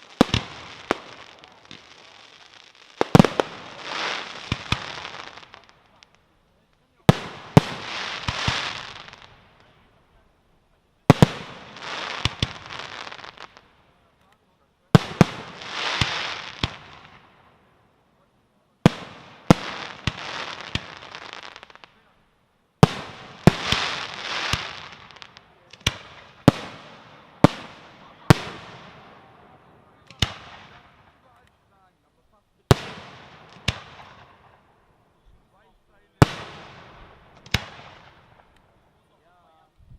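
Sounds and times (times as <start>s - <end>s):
firework hiss: 0.0s - 6.0s, 6.9s - 9.4s, 11.1s - 13.7s, 15.0s - 17.2s, 18.9s - 22.1s, 22.8s - 29.0s.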